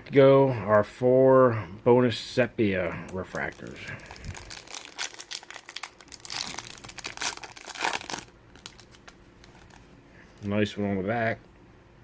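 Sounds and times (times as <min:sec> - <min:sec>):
wrapper torn and crinkled: 0:03.3 - 0:09.9.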